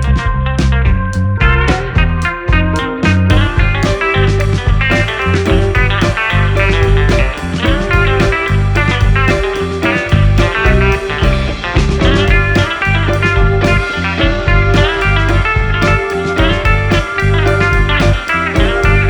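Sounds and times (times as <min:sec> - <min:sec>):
bass and drum beat: 0:00.0 - 0:19.0
bluesy rock guitar music: 0:00.0 - 0:19.0.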